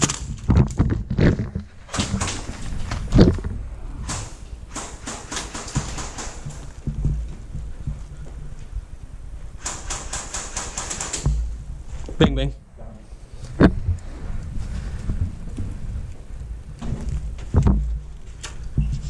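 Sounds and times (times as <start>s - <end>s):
gear knocking and rustling: 0.0s - 8.8s
airsoft rifle burst: 4.0s - 6.7s, 9.6s - 11.5s.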